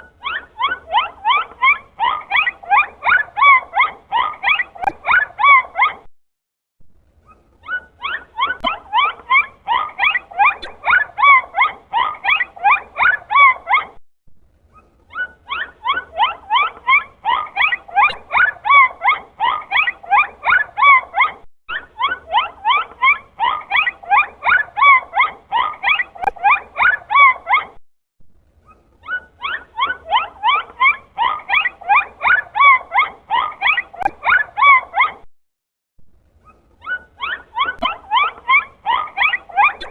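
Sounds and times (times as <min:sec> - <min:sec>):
dolphin squeaky chirps: 0:36.5 - 0:39.9.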